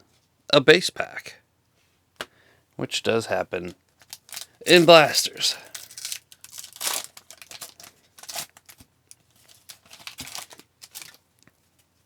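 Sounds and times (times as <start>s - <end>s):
card pack wrapper tearing and crinkling: 4.0s - 8.8s, 9.4s - 11.2s.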